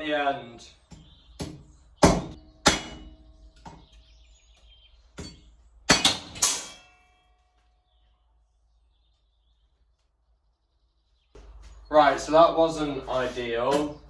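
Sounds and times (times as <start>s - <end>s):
hammer striking steel on anvil: 1.4s - 3.8s, 5.2s - 7.1s
metal ringing: 2.6s - 3.8s, 5.2s - 7.4s.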